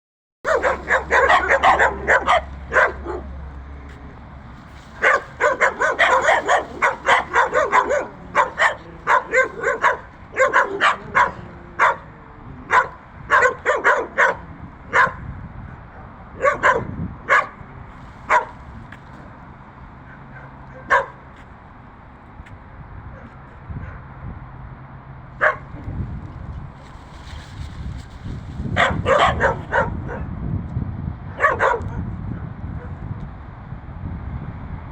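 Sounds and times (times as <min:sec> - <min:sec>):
dogs barking: 0:00.5 - 0:03.4, 0:04.9 - 0:15.3, 0:16.4 - 0:17.6, 0:18.2 - 0:18.7, 0:20.0 - 0:21.4, 0:25.4 - 0:25.8, 0:28.8 - 0:30.3, 0:31.4 - 0:32.0.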